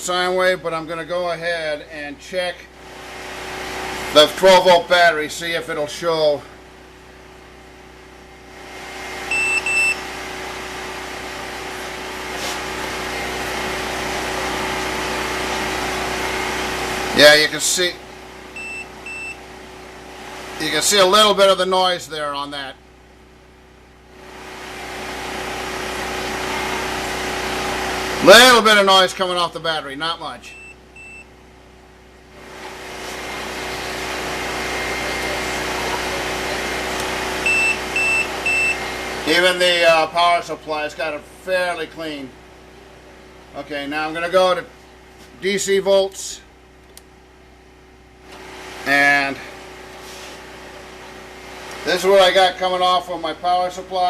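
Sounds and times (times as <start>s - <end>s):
cooling fan whirring: 0.0s - 54.0s
inverter humming: 0.0s - 54.0s
whooshing machine noise: 7.9s - 21.1s, 24.2s - 29.2s, 32.3s - 39.8s
short high beeps: 9.3s - 10.0s, 18.6s - 19.4s, 30.5s - 31.3s, 37.4s - 38.8s.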